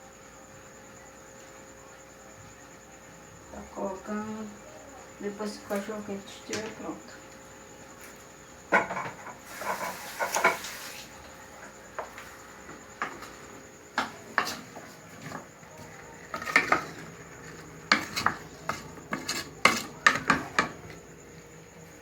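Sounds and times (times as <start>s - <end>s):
pots and pans clattering: 8.7s - 11.1s, 13.0s - 21.2s
dishes and utensils clinking: 8.8s - 10.7s, 14.0s - 21.0s.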